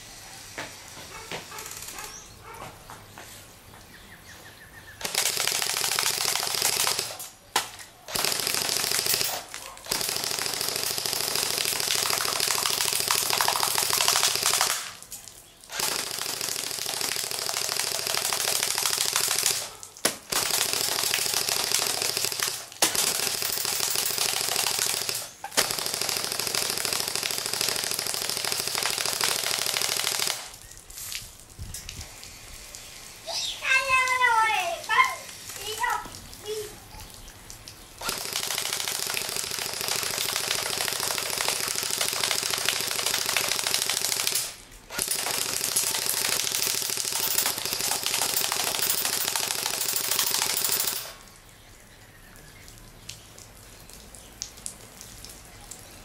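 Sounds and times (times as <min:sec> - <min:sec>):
airsoft rifle full-auto bursts: 0:05.0 - 0:07.2, 0:08.1 - 0:14.9, 0:15.7 - 0:19.7, 0:20.3 - 0:30.6, 0:38.0 - 0:51.2.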